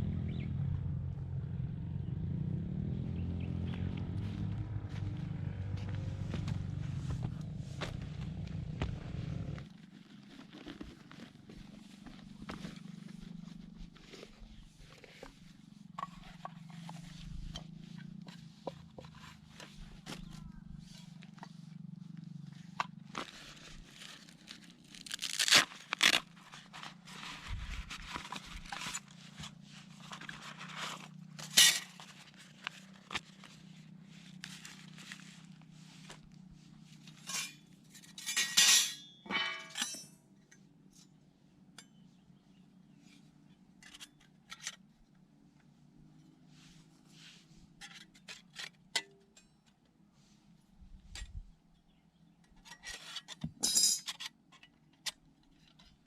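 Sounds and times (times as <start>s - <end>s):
steady low hum: 0.0s - 10.3s
camp gear clinking and scraping: 4.3s - 45.3s, 45.9s - 49.8s, 51.0s - 56.0s.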